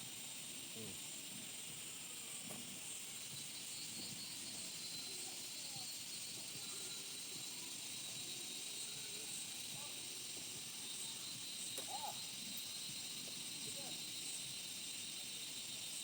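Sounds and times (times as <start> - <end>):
high-pitched outdoor hiss: 0.0 - 16.0.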